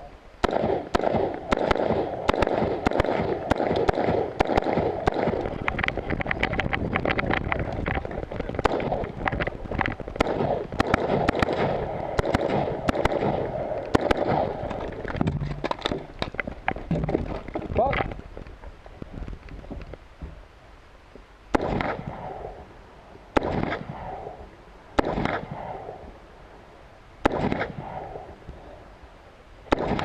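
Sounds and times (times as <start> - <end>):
steady rushing noise: 0.0 - 30.0
rifle shots: 0.4 - 7.3, 8.6 - 16.2, 21.5 - 22.7, 23.4 - 24.4, 25.0 - 26.0, 27.2 - 28.4, 29.7 - 30.0.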